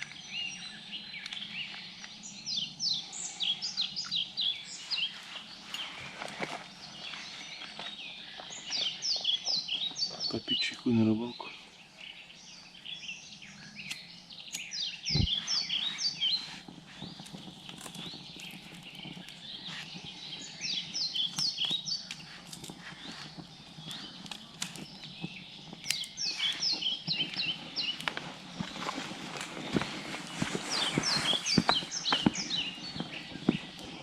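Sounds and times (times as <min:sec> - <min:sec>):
songbird chirping: 0:00.0 - 0:34.0.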